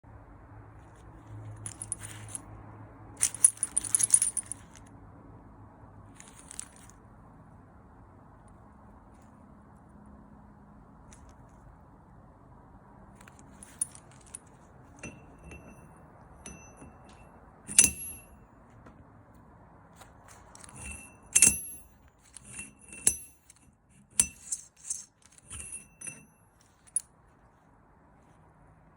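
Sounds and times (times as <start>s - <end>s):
small metal parts clinking: 1.2s - 2.5s, 3.2s - 4.9s, 6.1s - 7.0s, 13.2s - 18.4s, 20.3s - 27.1s.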